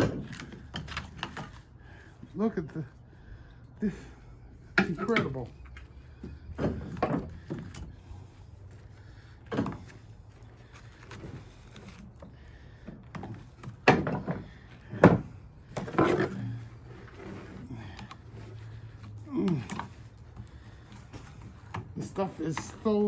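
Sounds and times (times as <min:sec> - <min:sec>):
metal clunks and scrapes: 0:04.8 - 0:08.4, 0:09.1 - 0:10.1, 0:12.8 - 0:23.0.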